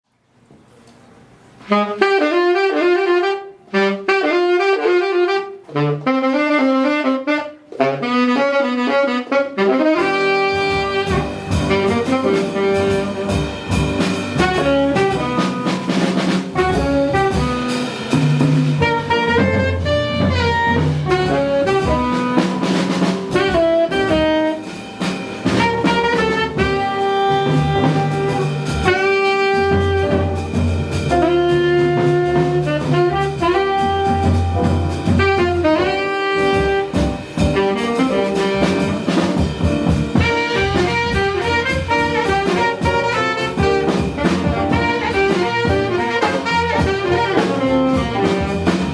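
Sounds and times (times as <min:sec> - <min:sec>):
drums: 0:00.4 - 0:48.9
saxophone melody: 0:01.6 - 0:48.9
bass: 0:08.0 - 0:48.9.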